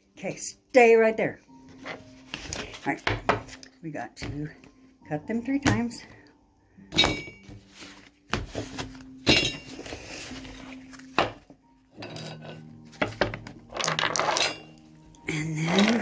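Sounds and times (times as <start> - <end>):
cards rustling: 1.9 - 3.8, 7.5 - 11.5.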